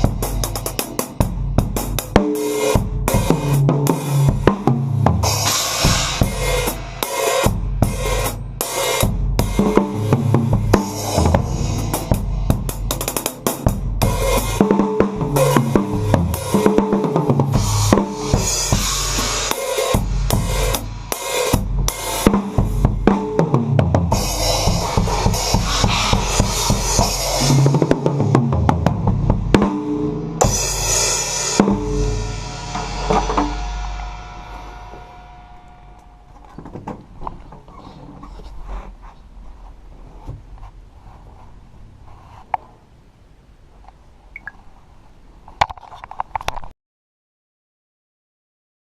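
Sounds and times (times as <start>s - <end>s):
acoustic drum kit groove: 0.0s - 37.6s
cymbal ringing: 5.4s - 14.6s, 30.4s - 36.6s.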